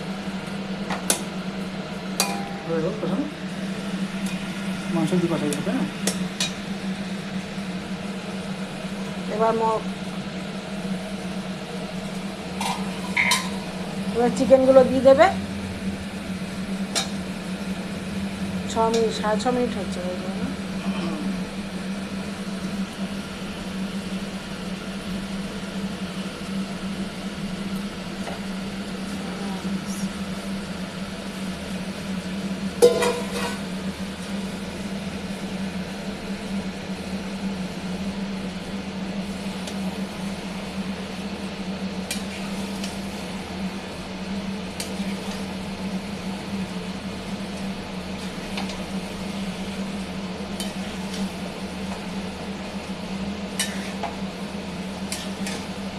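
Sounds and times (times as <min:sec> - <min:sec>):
utensil clanking on metal pot: 0:02.2 - 0:02.7, 0:12.6 - 0:13.6, 0:32.8 - 0:33.6
low hum: 0:12.1 - 0:22.5.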